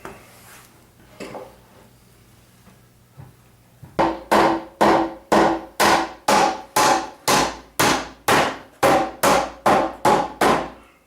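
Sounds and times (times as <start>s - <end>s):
hammer blows on wooden boards: 4.0s - 10.8s.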